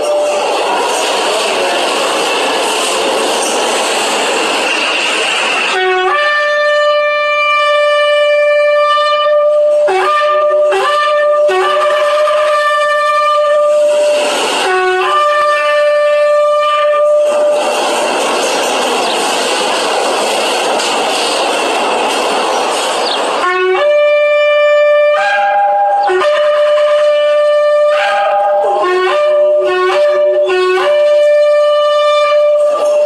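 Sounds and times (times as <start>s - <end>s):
loud rushing noise: 0.0s - 6.1s, 13.7s - 15.2s, 17.1s - 23.5s
shofar blasts: 5.7s - 17.6s, 23.4s - 33.0s.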